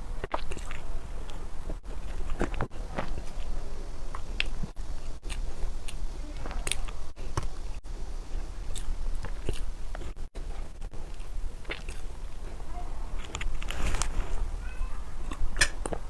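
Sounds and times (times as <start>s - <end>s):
person chewing and smacking lips: 0.0s - 14.2s, 15.2s - 16.0s
steady low hum: 0.0s - 16.0s.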